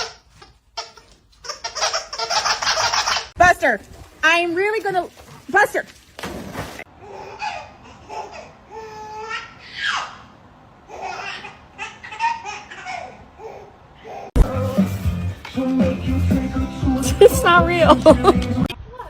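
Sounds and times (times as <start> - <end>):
music: 14.4 - 18.7
person laughing hard: 17.0 - 18.7.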